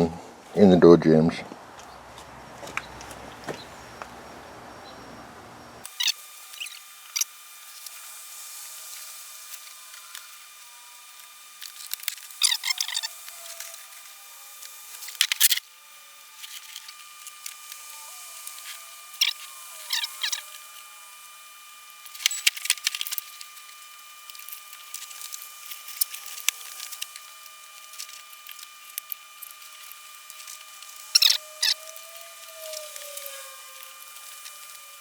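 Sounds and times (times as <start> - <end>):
faint high whine: 0.0 - 35.0
squeaky glides: 29.4 - 35.0.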